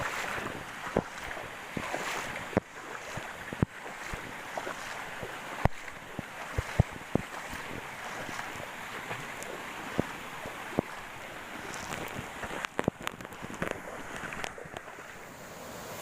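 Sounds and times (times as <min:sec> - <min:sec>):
river flowing: 0:00.0 - 0:16.0
sharp clicks and knocks: 0:11.8 - 0:14.9.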